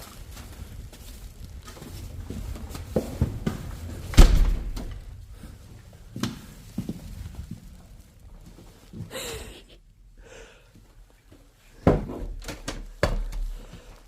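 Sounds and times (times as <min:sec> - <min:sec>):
knocks and bumps: 0:01.6 - 0:05.2
loud deep thud: 0:04.1 - 0:05.1.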